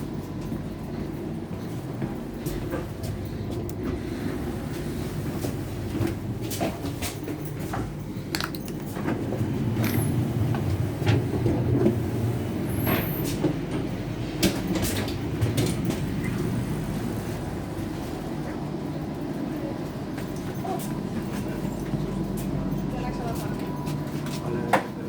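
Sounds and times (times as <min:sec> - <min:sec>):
train low rumble: 0:00.0 - 0:25.0
carriage clicks and rattles: 0:08.4 - 0:09.2.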